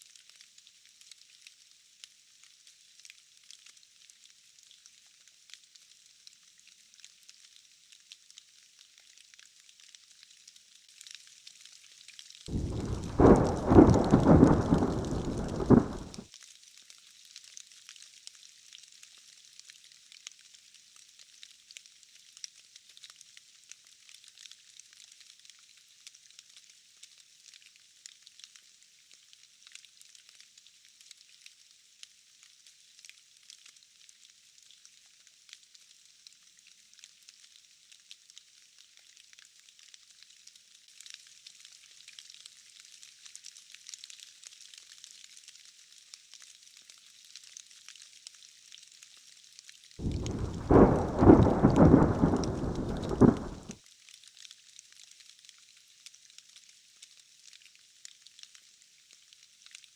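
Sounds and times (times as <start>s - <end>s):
rain patter: 0.0s - 59.9s
thunderclap rumbling: 12.5s - 16.2s, 50.0s - 53.7s.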